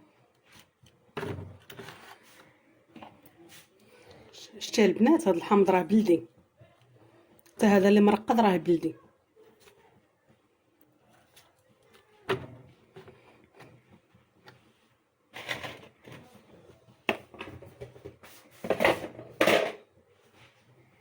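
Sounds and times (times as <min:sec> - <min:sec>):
dishes and utensils clattering: 0:17.1 - 0:19.9.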